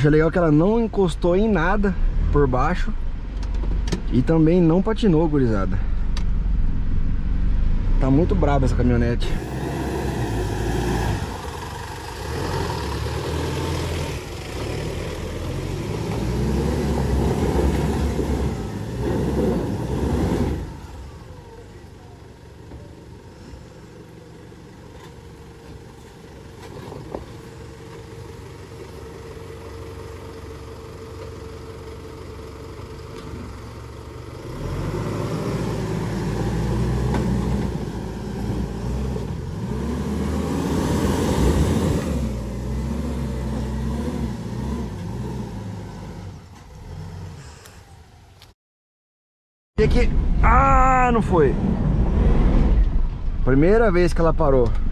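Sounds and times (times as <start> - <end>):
pickup engine pulling under load: 9.2 - 48.5.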